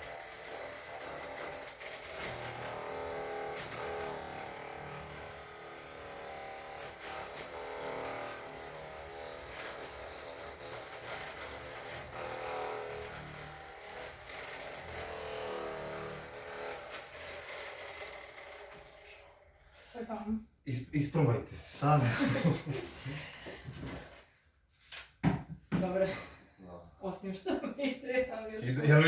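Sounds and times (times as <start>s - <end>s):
massage gun buzzing: 0.0s - 20.0s.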